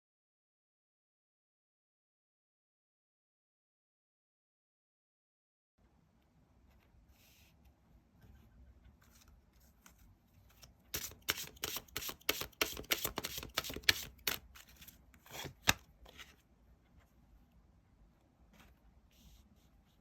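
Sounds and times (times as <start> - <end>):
cards being shuffled: 9.0 - 16.4.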